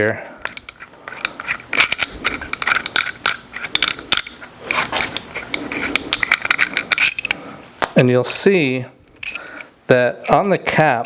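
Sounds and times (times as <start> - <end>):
metallic clicks and clinks of tools: 0.4 - 5.2, 5.9 - 7.9.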